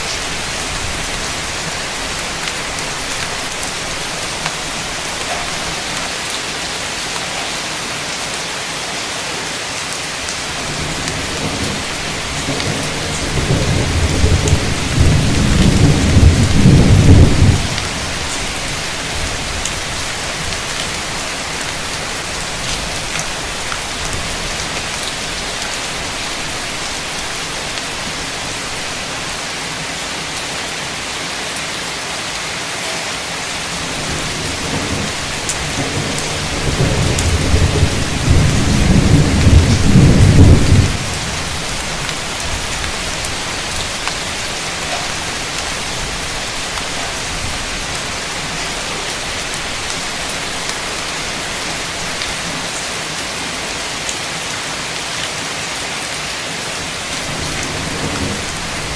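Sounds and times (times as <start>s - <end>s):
heavy rain: 0.0s - 58.9s
thunder rumbling: 10.5s - 29.6s, 33.7s - 52.6s, 57.1s - 58.9s.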